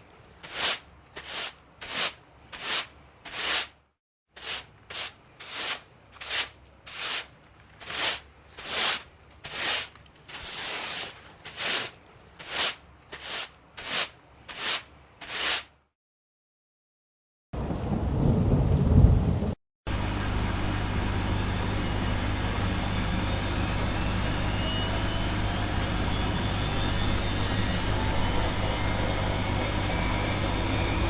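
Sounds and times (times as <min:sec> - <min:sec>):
rubbing or scraping strokes: 0:00.0 - 0:15.8.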